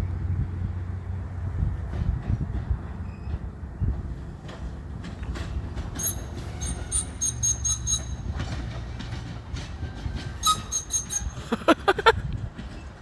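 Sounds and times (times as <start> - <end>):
train rolling past: 0.1 - 13.0
train wheels squealing: 3.0 - 3.9, 5.4 - 11.9.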